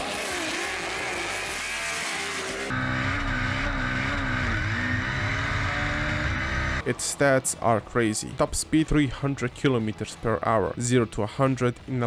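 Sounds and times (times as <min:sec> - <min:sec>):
turbo car engine running: 0:00.0 - 0:06.8.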